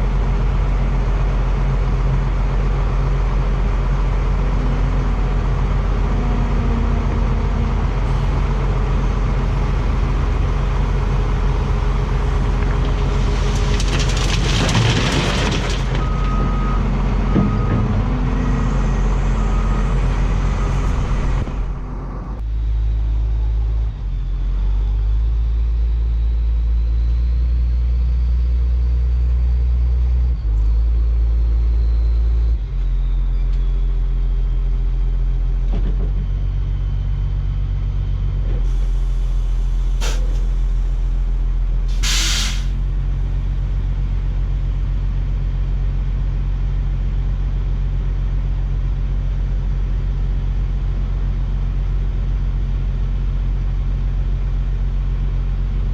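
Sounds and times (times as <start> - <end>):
truck diesel engine running: 0.0 - 25.5, 36.4 - 55.9
deep heavy rumble: 0.0 - 55.9
loud hiss: 41.9 - 42.8.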